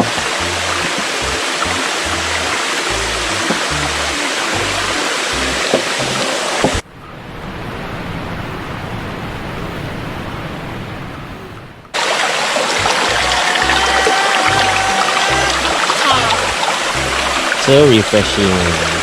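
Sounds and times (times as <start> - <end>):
waterfall rushing: 0.0 - 6.8, 12.0 - 19.0.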